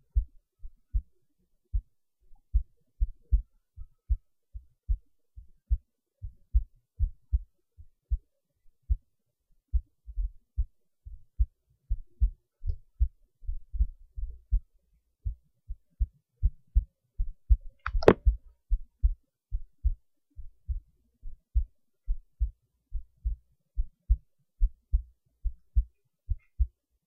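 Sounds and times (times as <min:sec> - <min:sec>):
heartbeat thumps: 0:00.0 - 0:26.8
sharp knock: 0:17.8 - 0:18.3.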